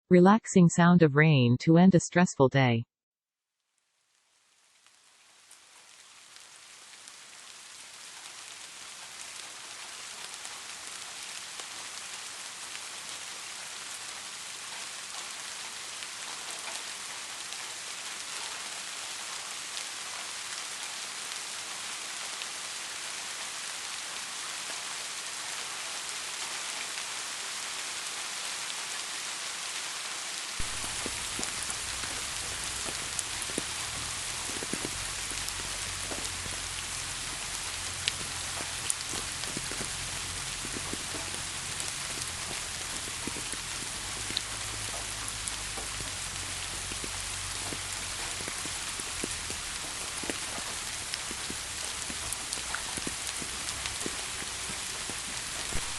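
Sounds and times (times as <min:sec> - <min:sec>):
steady rain falling: 0:03.9 - 0:55.9
loud raindrops striking: 0:30.6 - 0:55.9.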